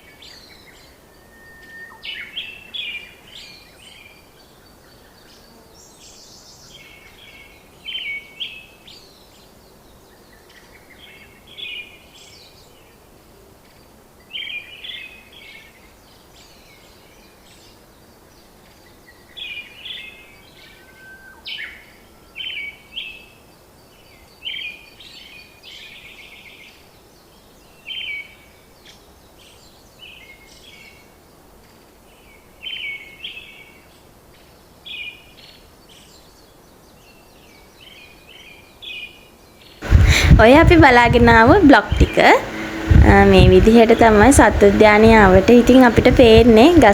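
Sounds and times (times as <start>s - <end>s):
background hiss: 0.0s - 46.9s
birds chirping: 39.8s - 46.9s.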